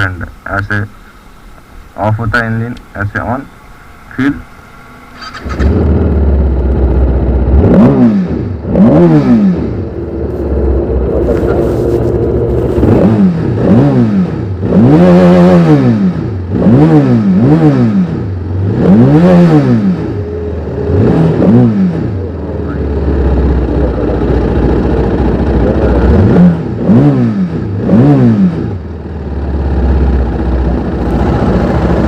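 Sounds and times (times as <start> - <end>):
motorcycle engine revving: 3.6 - 32.0.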